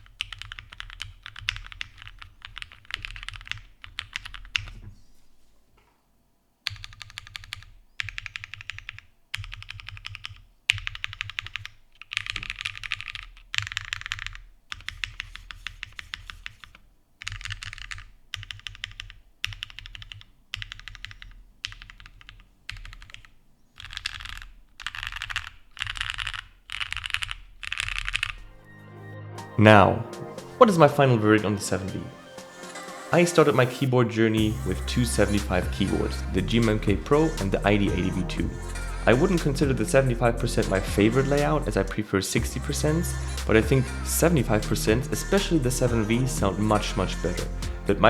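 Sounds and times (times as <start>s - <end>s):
mechanical keyboard typing: 0.0s - 4.8s, 6.7s - 28.4s.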